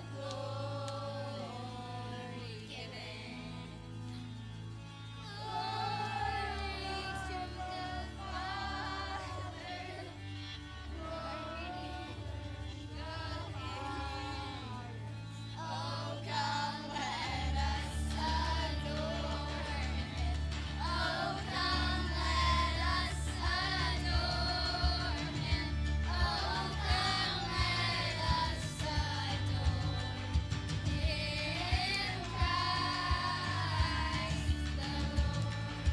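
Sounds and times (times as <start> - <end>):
instrumental accompaniment: 0.0 - 35.9.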